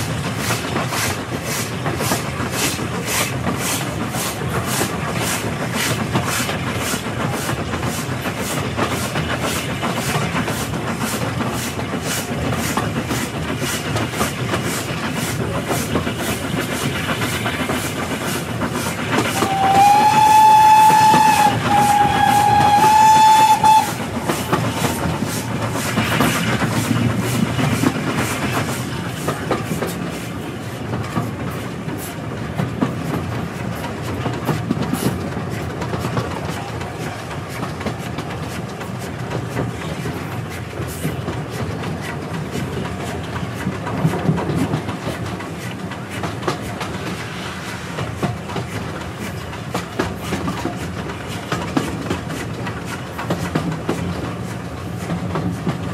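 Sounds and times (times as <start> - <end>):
train wheels clickety-clack: 0.0 - 55.9
steam whistle blasts: 19.3 - 25.6.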